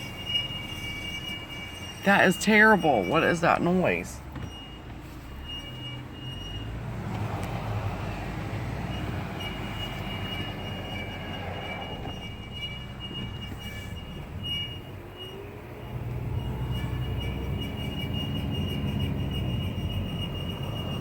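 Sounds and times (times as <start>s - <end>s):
high-pitched car squeal: 0.0s - 21.0s.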